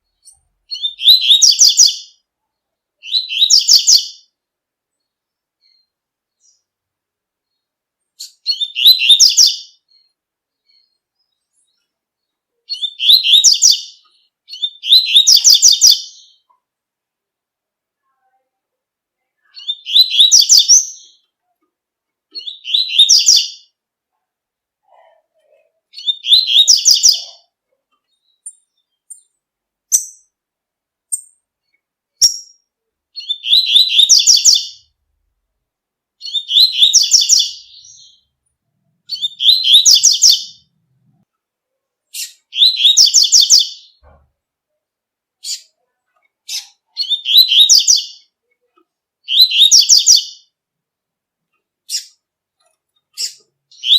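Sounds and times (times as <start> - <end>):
bird singing: 0.0 - 2.3, 3.0 - 4.4, 7.4 - 16.6, 19.4 - 21.4, 22.3 - 23.8, 25.9 - 30.4, 31.1 - 35.0, 36.2 - 38.3, 39.0 - 40.7, 42.1 - 44.0, 46.5 - 48.4, 49.2 - 50.6, 53.1 - 53.9.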